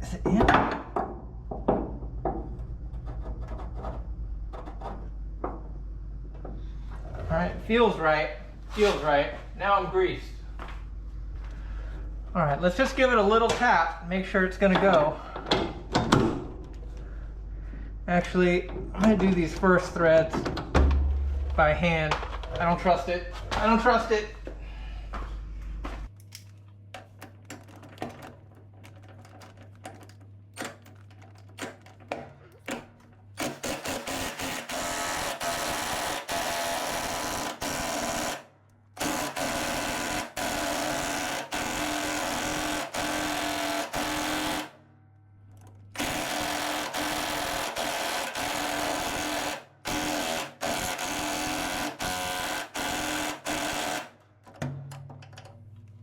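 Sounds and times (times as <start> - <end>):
impact wrench hammering: 33.4 - 38.4, 39.0 - 44.7, 46.0 - 54.8.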